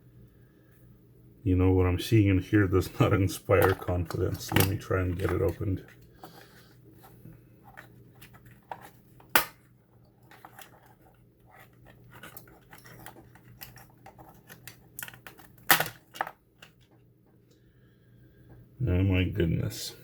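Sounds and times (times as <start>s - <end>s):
plastic housing clicking and scraping: 2.9s - 17.0s
plastic cracking and knocking: 3.5s - 6.0s, 7.7s - 17.0s
plastic snapping: 8.2s - 9.7s, 10.3s - 16.9s.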